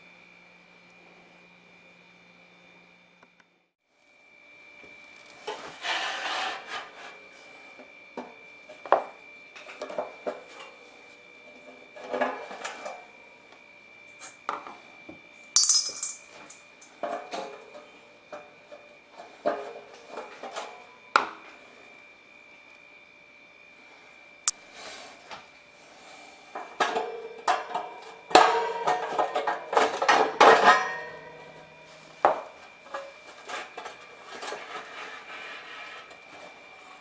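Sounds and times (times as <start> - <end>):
metal parts and tools clinking: 15.5 - 16.6.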